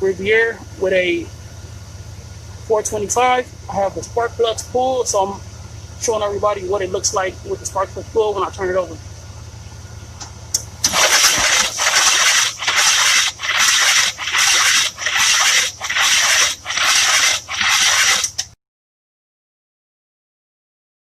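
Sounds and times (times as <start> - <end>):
engine cranking on starter: 10.5 - 18.6
rhythmic whooshing of air: 10.8 - 18.6.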